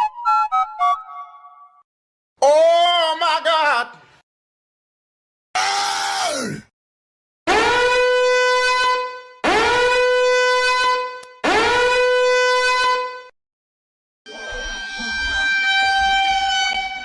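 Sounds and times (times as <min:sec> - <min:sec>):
long brassy horn blasts: 0:07.5 - 0:13.2.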